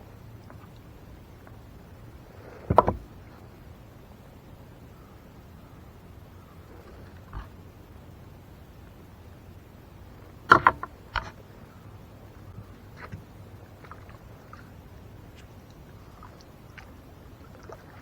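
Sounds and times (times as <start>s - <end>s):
water sounds: 0.0s - 18.0s
knocks against a kayak: 2.7s - 3.1s, 10.5s - 11.3s.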